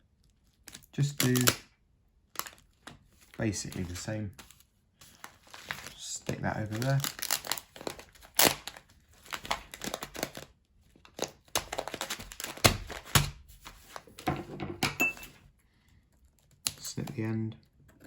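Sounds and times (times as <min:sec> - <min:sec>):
sticky tape tearing: 0:01.1 - 0:01.6, 0:07.0 - 0:08.8
plastic bag crinkling: 0:02.4 - 0:14.1.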